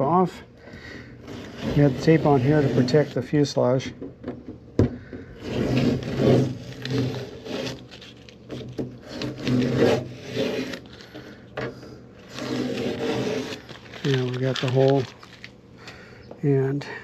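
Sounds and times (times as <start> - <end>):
tape being peeled off: 5.4 - 11.4, 12.2 - 15.6.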